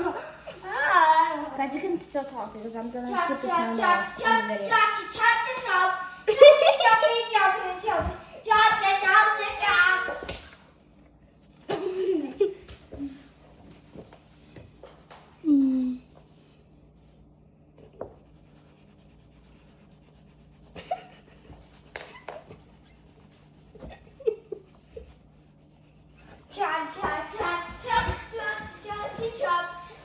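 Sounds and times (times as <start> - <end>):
drawing tool scratching paper: 0.0 - 7.6, 11.3 - 16.4, 18.0 - 30.0.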